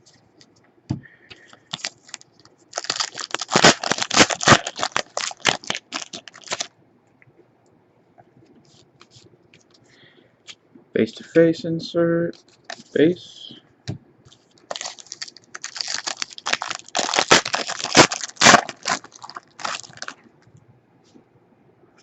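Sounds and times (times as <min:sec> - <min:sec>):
wrapper tearing and crinkling: 0:01.7 - 0:06.7, 0:14.7 - 0:20.2.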